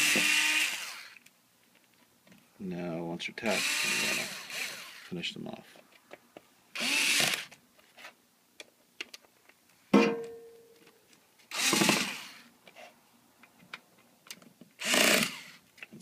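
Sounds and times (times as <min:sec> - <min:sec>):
electric screwdriver running: 0:00.0 - 0:01.2, 0:03.6 - 0:05.1, 0:06.8 - 0:07.5, 0:11.5 - 0:12.5, 0:14.8 - 0:15.6.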